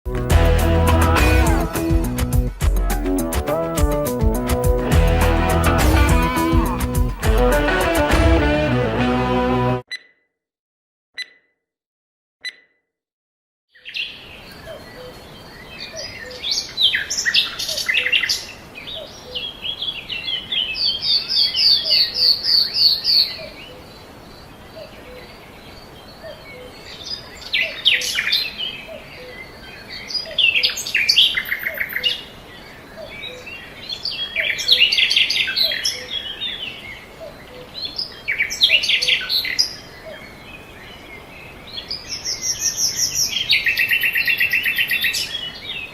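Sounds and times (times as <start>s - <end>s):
songbirds chirping and trilling: 13.7s - 45.9s.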